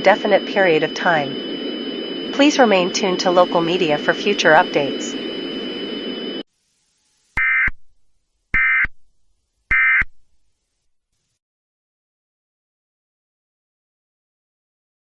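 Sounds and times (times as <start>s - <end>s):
buzzing data tone bursts: 0.0s - 6.4s, 7.4s - 7.7s, 8.6s - 8.9s, 9.7s - 10.1s
hissy background with high tones: 0.0s - 7.5s.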